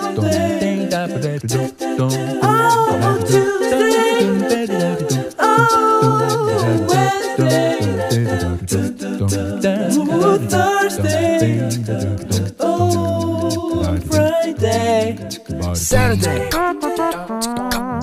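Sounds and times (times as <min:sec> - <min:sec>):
a cappella group singing: 0:00.0 - 0:17.9.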